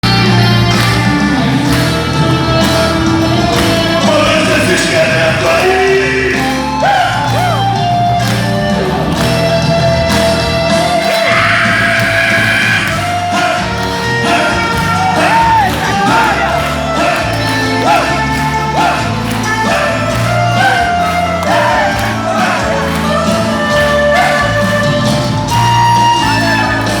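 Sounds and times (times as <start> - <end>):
gospel band playing: 0.0 - 27.0
people singing: 12.0 - 24.8.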